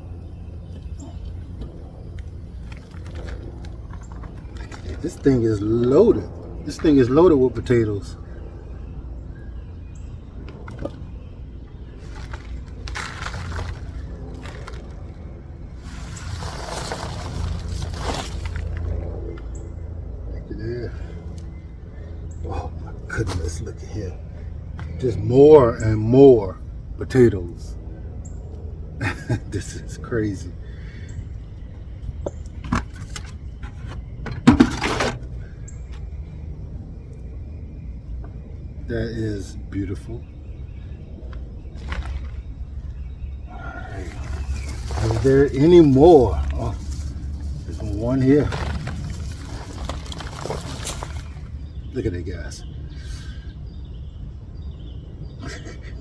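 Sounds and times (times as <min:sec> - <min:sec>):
low steady rumble: 0:00.0 - 0:56.0
soil scraping and crumbling: 0:02.6 - 0:07.1, 0:11.8 - 0:19.5, 0:32.3 - 0:36.1, 0:43.5 - 0:52.5
hands rustling through soil: 0:12.0 - 0:19.1, 0:43.6 - 0:52.0.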